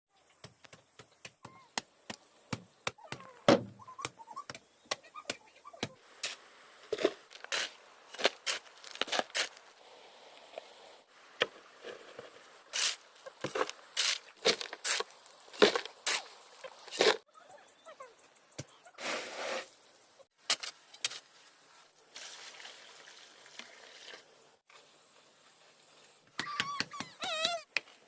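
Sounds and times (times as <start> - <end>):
sharp knocks and taps: 0.4 - 6.0
short scrapes and rustles: 6.2 - 9.7, 19.0 - 19.7.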